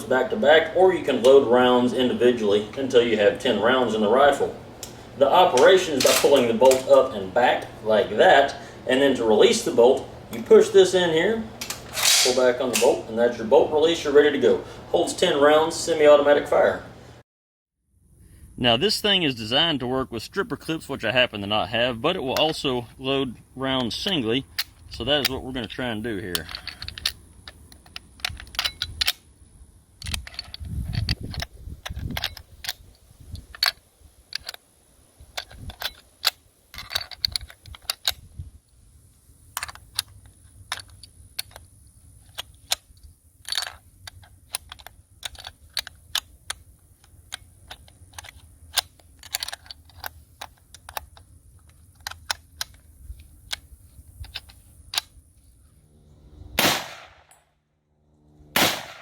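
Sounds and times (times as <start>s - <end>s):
rifle handling noise: 4.2s - 7.7s, 11.6s - 13.0s, 23.3s - 29.4s, 30.0s - 34.7s, 35.3s - 38.3s, 39.4s - 56.0s, 58.5s - 59.0s
metallic cartridge clicks: 11.6s - 13.0s, 23.3s - 29.4s, 30.0s - 34.6s, 35.4s - 38.3s, 39.5s - 55.2s.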